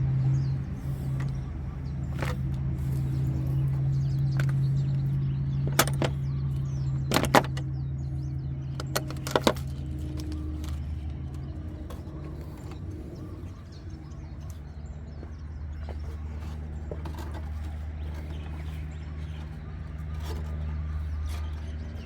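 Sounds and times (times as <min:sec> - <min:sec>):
low mechanical hum: 0:00.0 - 0:22.0
clicks of handling wiring: 0:00.6 - 0:13.6.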